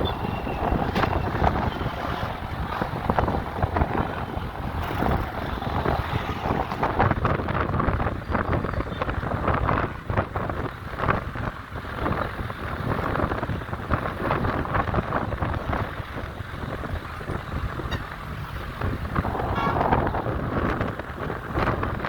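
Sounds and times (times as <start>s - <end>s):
road traffic: 0.0s - 22.0s
wind buffeting microphone: 0.0s - 22.0s
brief pitched tone: 19.2s - 20.3s.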